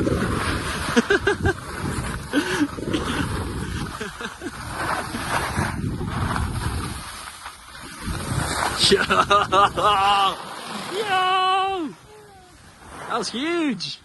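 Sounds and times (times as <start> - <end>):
wind rushing over microphone: 0.0 - 13.4
skis scraping over snow: 0.0 - 14.0
person shouting: 9.8 - 12.6.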